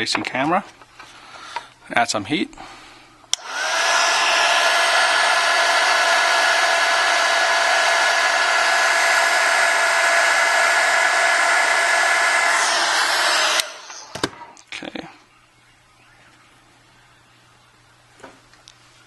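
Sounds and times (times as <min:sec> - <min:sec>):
hot-air blower motor whine: 0:03.3 - 0:14.6
rush of air: 0:03.4 - 0:14.5.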